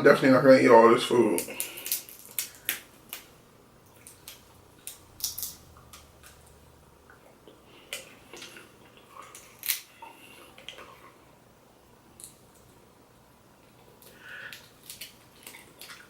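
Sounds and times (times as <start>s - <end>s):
seafood shells cracking: 1.4s - 3.3s, 3.9s - 6.5s, 9.2s - 9.9s, 14.0s - 16.0s.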